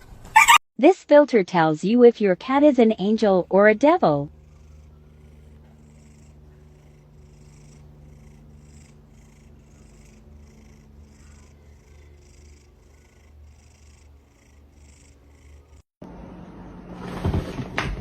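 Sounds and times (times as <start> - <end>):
cat purring: 3.8 - 15.9.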